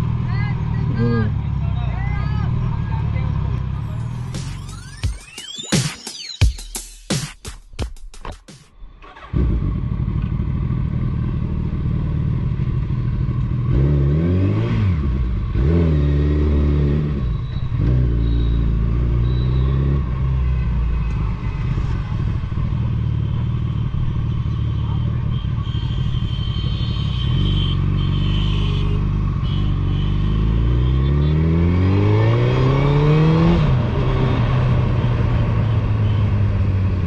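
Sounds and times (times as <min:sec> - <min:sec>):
electronic music: 0:03.8 - 0:08.7
motorcycle engine revving: 0:09.0 - 0:37.0.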